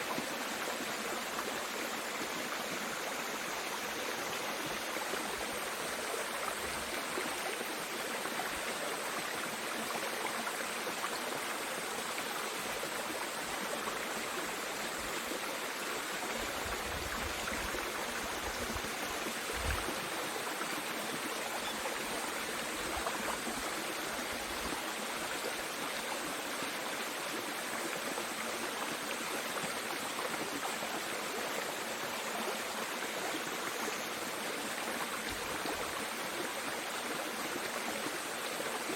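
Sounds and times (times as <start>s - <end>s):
stream rushing: 11.0s - 25.7s.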